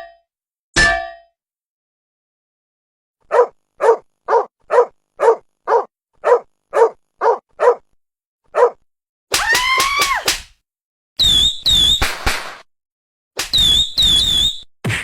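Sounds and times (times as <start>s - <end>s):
dog barking: 3.2s - 8.8s.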